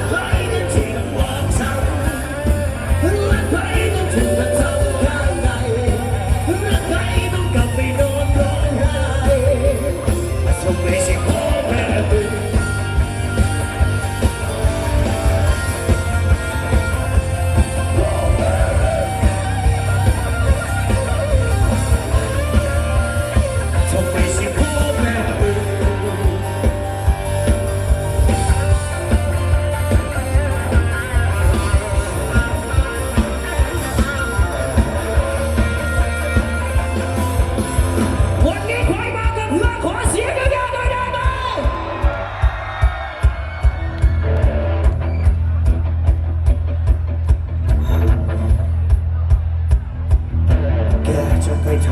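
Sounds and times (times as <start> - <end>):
person singing: 0.0 - 12.8, 17.7 - 19.9
live band music: 0.0 - 51.9.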